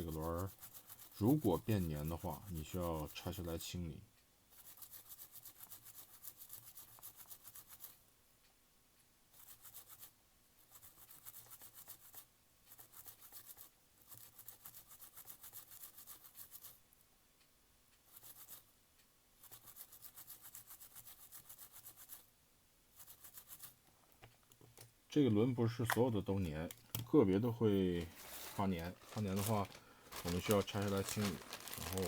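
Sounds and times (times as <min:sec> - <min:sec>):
fast fine scrubbing: 0:00.0 - 0:03.7, 0:27.5 - 0:32.0.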